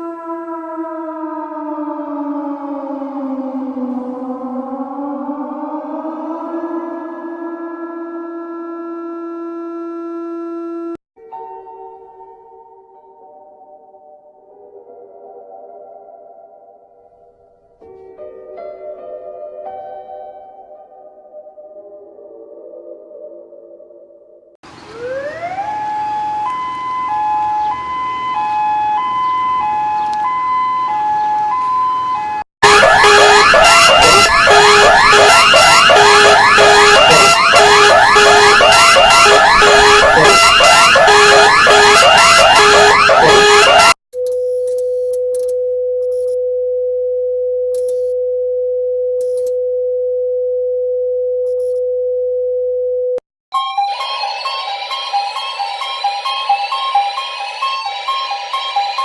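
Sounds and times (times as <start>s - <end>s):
electronic two-tone siren: 0.0s - 11.0s, 24.9s - 44.0s, 53.6s - 59.0s
alarm with rising sweeps: 2.0s - 8.4s, 26.4s - 44.0s
steady single-pitch alert tone: 32.6s - 44.0s.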